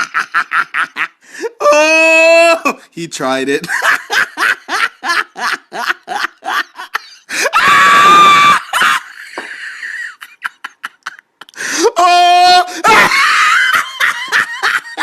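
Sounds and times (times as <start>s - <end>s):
person laughing hysterically: 0.0s - 2.0s, 3.6s - 15.0s
wheezing gasps: 1.2s - 1.6s, 11.5s - 11.8s.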